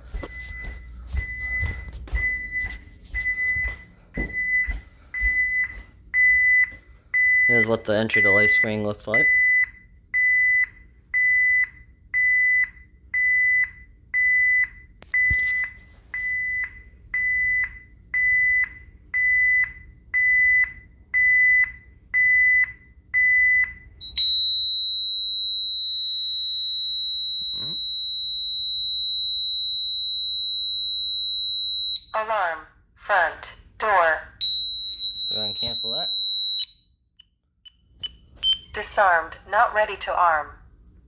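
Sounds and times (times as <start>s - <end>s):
continuous alarm tone: 0.0s - 32.6s, 34.4s - 40.0s
short high alarm beeps: 0.3s - 32.2s, 34.4s - 37.0s.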